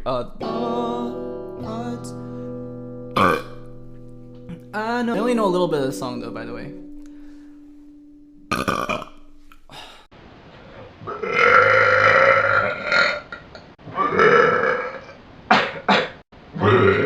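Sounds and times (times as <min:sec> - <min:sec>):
man belching: 0:03.1 - 0:03.6, 0:04.5 - 0:05.3, 0:08.5 - 0:09.9, 0:11.2 - 0:13.2, 0:14.0 - 0:15.0.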